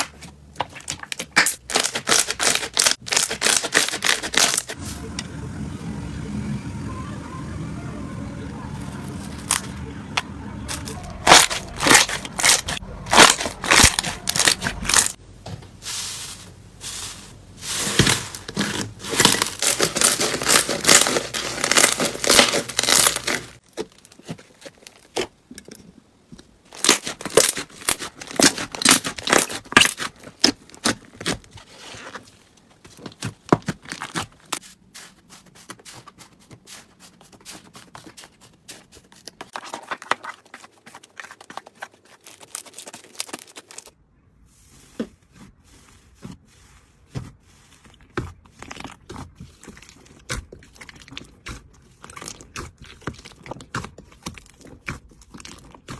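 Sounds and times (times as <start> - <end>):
slime crackling and popping: 0.0 - 4.8, 10.8 - 15.2, 18.0 - 24.1, 26.7 - 31.4, 48.5 - 55.9.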